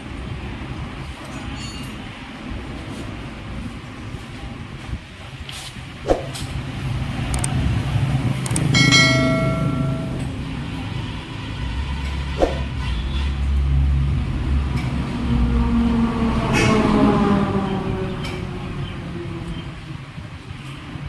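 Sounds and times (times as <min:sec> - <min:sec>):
struck metal ringing: 0:08.7 - 0:10.7.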